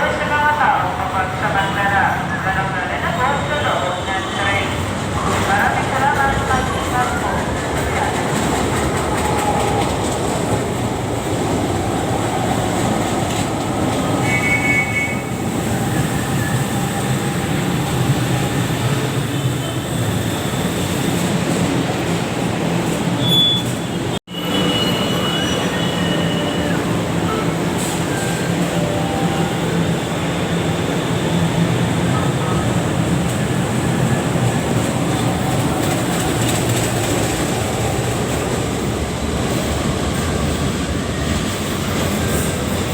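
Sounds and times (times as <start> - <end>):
train rolling rumble: 0.0 - 42.9
faint wheel squeal: 23.2 - 26.8.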